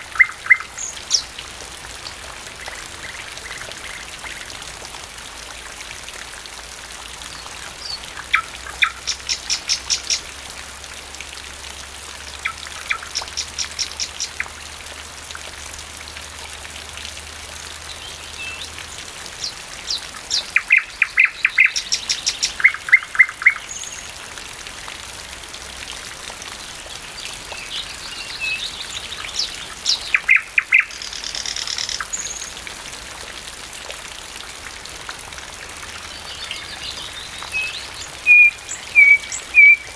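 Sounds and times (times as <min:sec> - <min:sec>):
nightingale singing: 0:00.0 - 0:01.4, 0:19.4 - 0:24.1, 0:27.5 - 0:32.6, 0:36.0 - 0:39.9
steady rainfall: 0:00.0 - 0:39.9.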